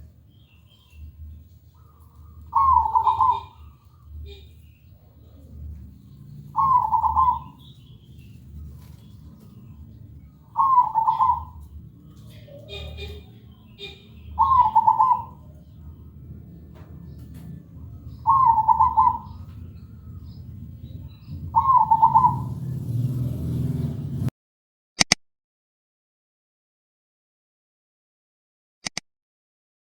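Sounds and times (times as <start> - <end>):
low steady rumble: 0.0 - 22.8
dove cooing: 0.7 - 22.9
brief click: 25.0 - 25.2, 28.8 - 29.0.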